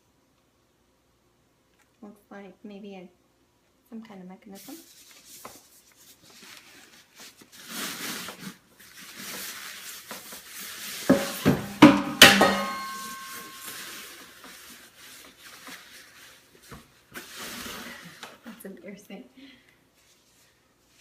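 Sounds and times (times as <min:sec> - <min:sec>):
metal ringing: 0:11.2 - 0:13.9.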